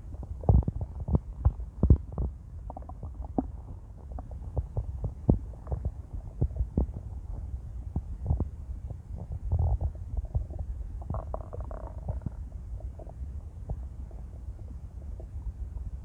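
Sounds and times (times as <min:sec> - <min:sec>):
stomach growling and gurgling: 0:00.0 - 0:16.0.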